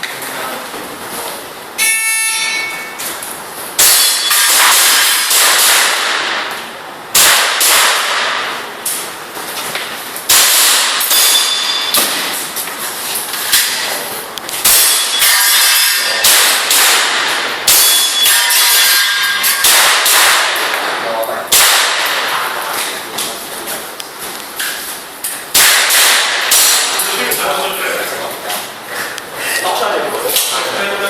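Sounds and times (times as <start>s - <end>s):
airsoft pistol shots: 3.8s - 6.5s, 7.1s - 8.6s, 10.3s - 12.2s, 14.6s - 15.3s, 16.2s - 22.4s, 25.5s - 27.0s.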